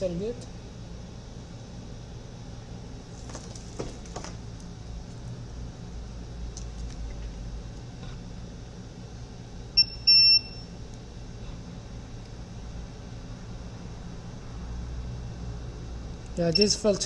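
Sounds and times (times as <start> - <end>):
low steady hum: 0.0 - 17.0
multimeter beeping: 9.8 - 10.6, 16.5 - 16.8.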